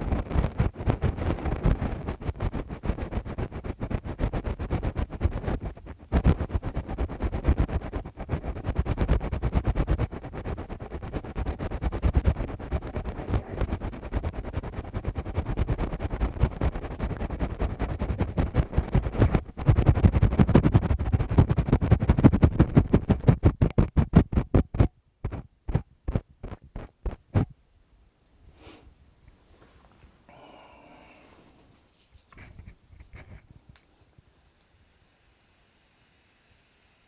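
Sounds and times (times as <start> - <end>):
gloved fingers rubbing microphone: 0.0 - 27.6, 32.0 - 33.7.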